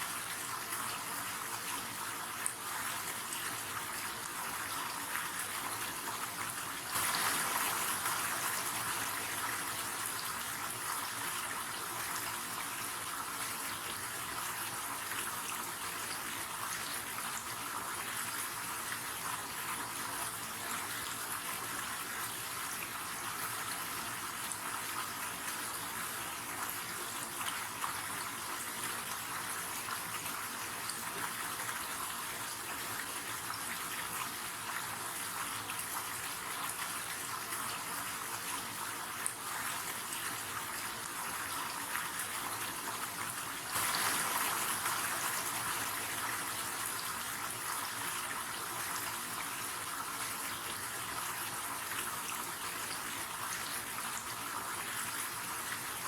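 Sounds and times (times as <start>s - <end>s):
river water flowing: 43.6s - 47.6s.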